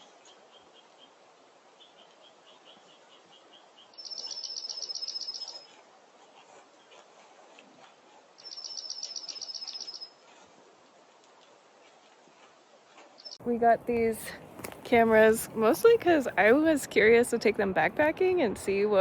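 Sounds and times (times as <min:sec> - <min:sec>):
faint bird chirps: 0:01.8 - 0:05.7, 0:08.4 - 0:10.2
songbird trilling: 0:02.6 - 0:05.7, 0:08.4 - 0:10.2.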